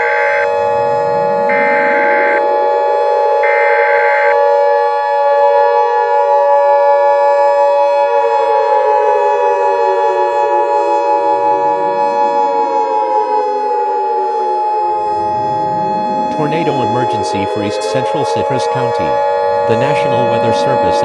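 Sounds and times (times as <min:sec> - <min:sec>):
steady held tone: 0:00.0 - 0:04.7, 0:11.2 - 0:21.0
warning siren wailing: 0:00.0 - 0:21.0.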